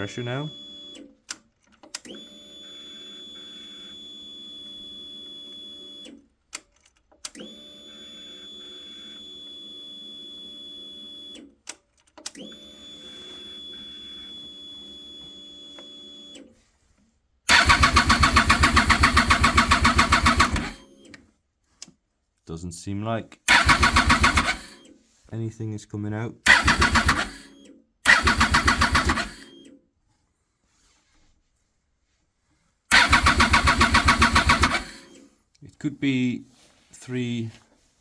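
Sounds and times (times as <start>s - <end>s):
fuel pump humming: 17.5s - 20.8s, 23.5s - 24.8s, 26.5s - 27.5s, 28.1s - 29.6s, 32.9s - 35.2s
starter cranking engine: 17.5s - 20.8s, 23.5s - 24.8s, 26.5s - 29.6s, 32.9s - 35.2s
fuel pump click: 23.5s - 24.7s, 32.9s - 35.2s.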